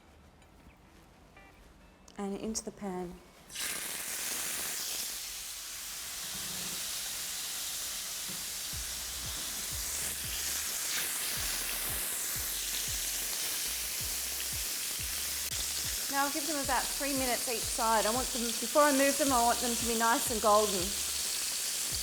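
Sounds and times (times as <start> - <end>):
meat sizzling in a hot pan: 3.5 - 22.0
background music with bass beat: 8.7 - 10.8, 11.4 - 18.5.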